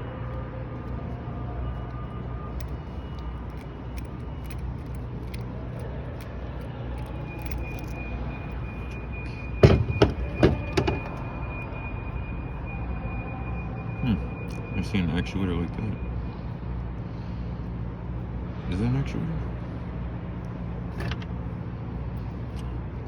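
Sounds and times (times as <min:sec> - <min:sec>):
padlock parts clicking: 0:00.7 - 0:11.2, 0:20.4 - 0:22.8.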